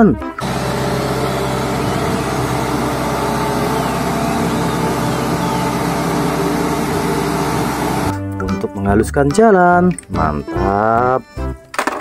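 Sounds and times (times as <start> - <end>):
diesel engine droning: 0.4 - 8.2.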